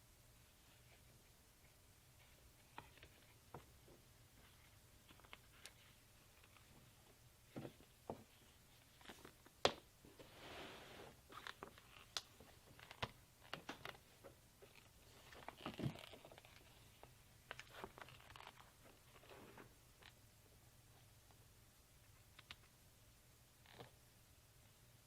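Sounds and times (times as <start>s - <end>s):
rustling scrapes: 10.2s - 11.5s.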